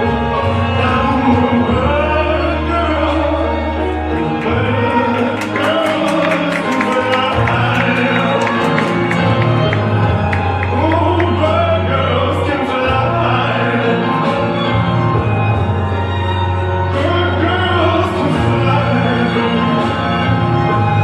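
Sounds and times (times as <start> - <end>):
person singing: 0.6 - 14.6.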